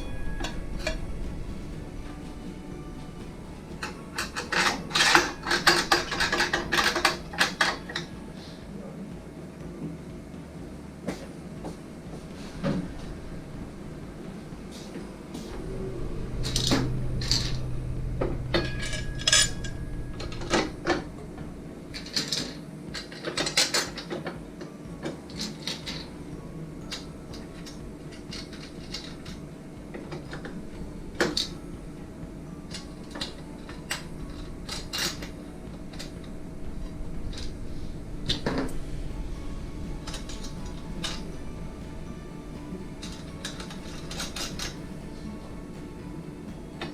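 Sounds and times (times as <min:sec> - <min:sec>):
low hum: 0:00.0 - 0:46.9.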